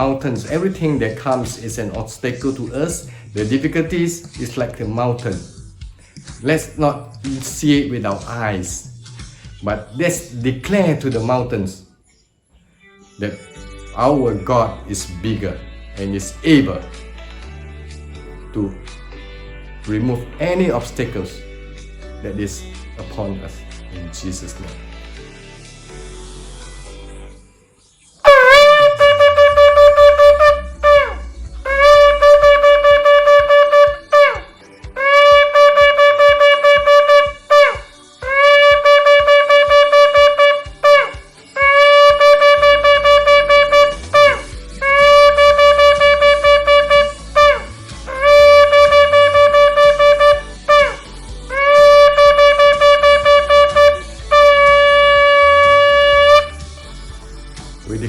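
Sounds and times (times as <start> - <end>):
shofar blasts: 28.2 - 56.7.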